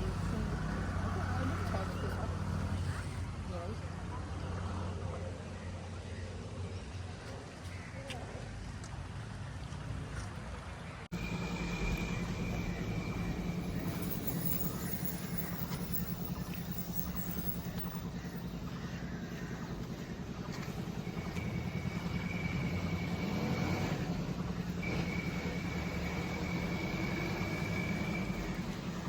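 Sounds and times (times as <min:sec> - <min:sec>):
vehicle engine humming: 0:00.0 - 0:05.4, 0:10.8 - 0:29.0
faint high whine: 0:11.1 - 0:20.0, 0:20.7 - 0:29.0.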